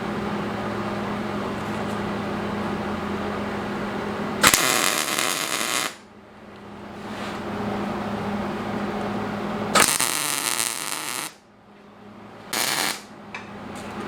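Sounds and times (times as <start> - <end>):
electrical hum: 0.0 - 14.0
welding arc hissing: 4.4 - 6.0, 9.8 - 11.4, 12.6 - 13.1.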